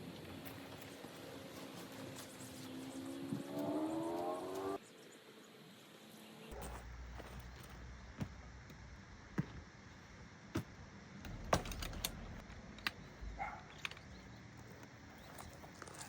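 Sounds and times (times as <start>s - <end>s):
camping gear clicking and knocking: 10.6s - 14.7s.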